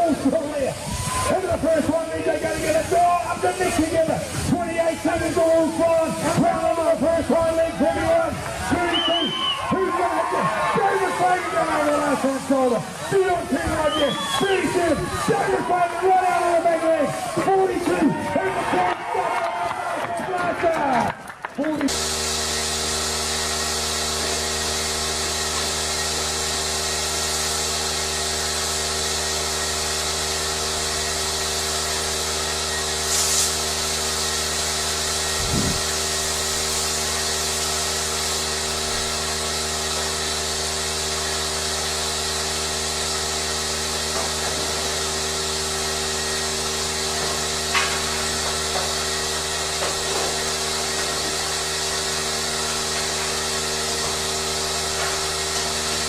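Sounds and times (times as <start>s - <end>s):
machinery hiss: 21.9s - 42.2s
motor hum: 21.9s - 49.9s.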